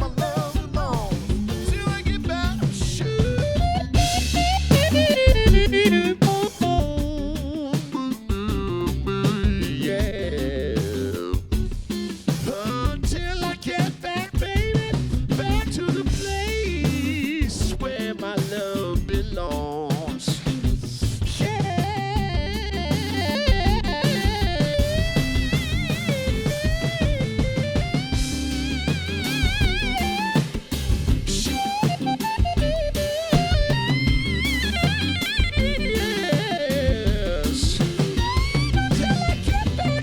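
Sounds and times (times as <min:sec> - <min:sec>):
instrumental pop music: 0:00.0 - 0:40.0
wavering melody line: 0:21.8 - 0:30.5, 0:31.3 - 0:37.5.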